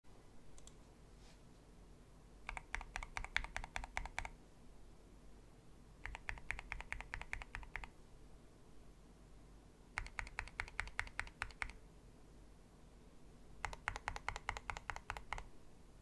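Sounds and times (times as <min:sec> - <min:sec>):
mechanical keyboard typing: 0:02.5 - 0:04.4, 0:06.0 - 0:07.9, 0:10.0 - 0:11.8, 0:13.6 - 0:15.5.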